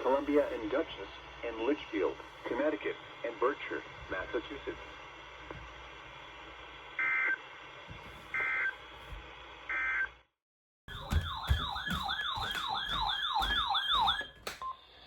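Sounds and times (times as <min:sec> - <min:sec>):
electronic siren-like alert tone: 0:10.9 - 0:14.4.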